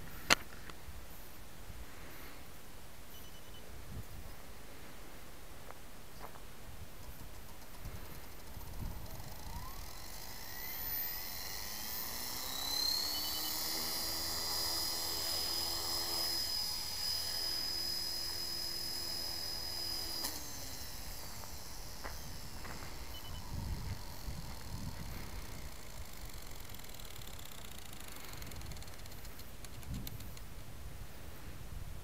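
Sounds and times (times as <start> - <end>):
electric rc helicopter whining: 6.8 - 30.6
rotor winding down: 7.0 - 30.4.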